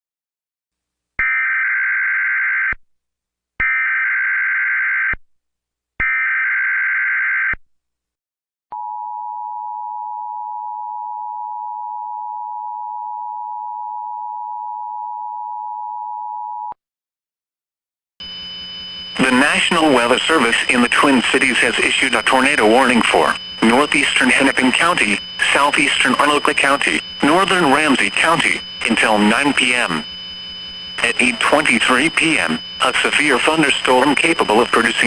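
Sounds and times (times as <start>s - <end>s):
buzzy data bursts: 18.3s - 35.0s
two-tone attention signal: 19.1s - 30.1s, 31.0s - 35.0s.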